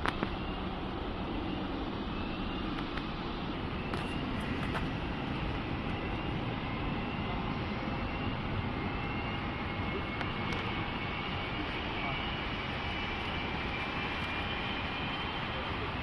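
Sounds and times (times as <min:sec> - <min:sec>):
jet engines roaring: 0:00.0 - 0:16.0.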